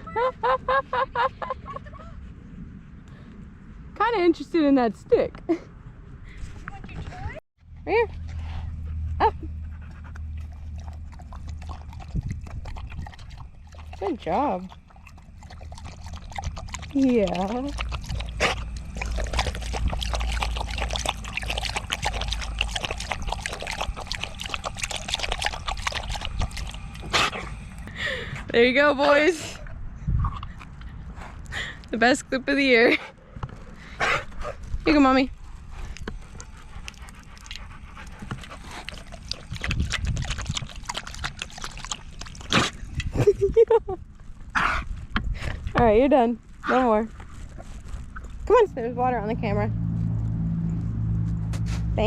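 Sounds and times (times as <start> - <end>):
low rumble: 0.0 - 52.0
dog panting: 8.1 - 29.5, 35.7 - 43.4
water splashing and trickling: 10.3 - 28.2, 35.8 - 43.8
low bumps: 44.9 - 52.0.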